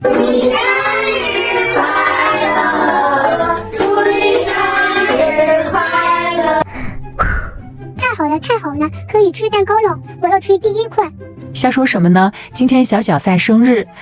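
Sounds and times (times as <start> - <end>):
high child-like singing: 0.0 - 6.6
backing music: 0.0 - 14.0.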